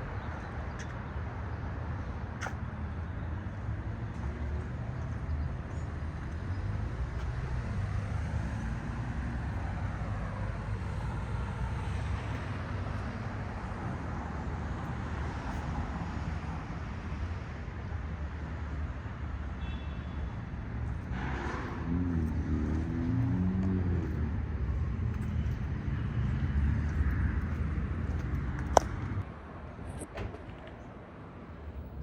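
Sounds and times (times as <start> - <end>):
low rumble of traffic: 0.0 - 32.0
vehicle passing by: 20.8 - 29.2.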